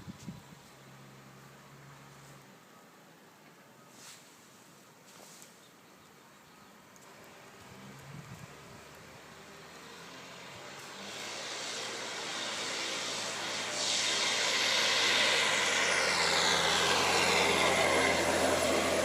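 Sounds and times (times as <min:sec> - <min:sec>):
motor vehicle approaching: 0:07.0 - 0:19.0.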